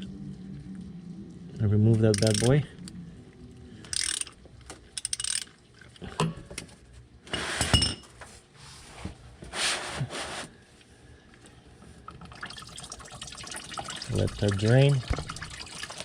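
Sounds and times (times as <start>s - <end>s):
metal and plastic scraping and clinks: 2.2s - 2.5s.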